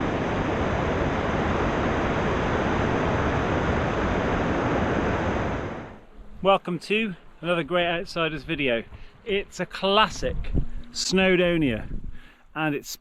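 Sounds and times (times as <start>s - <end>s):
steady loud rushing noise: 0.0s - 12.2s.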